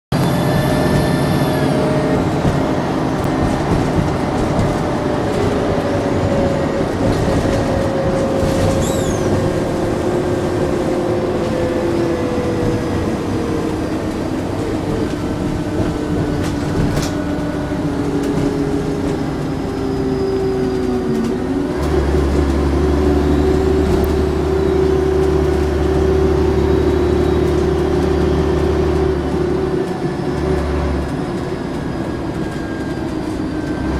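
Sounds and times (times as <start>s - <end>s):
turbocharger whistling: 0.1s - 2.9s, 8.1s - 12.1s, 21.4s - 33.9s
bus engine running: 0.1s - 33.9s
deep engine drone: 0.1s - 33.9s.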